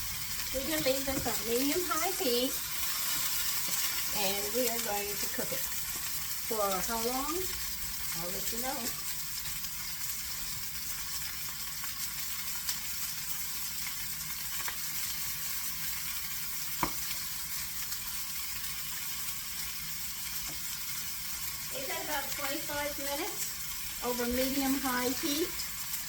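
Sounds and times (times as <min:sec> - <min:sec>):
chicken sizzling in oil: 0:00.0 - 0:26.0
sharp oil pop: 0:16.8 - 0:17.0.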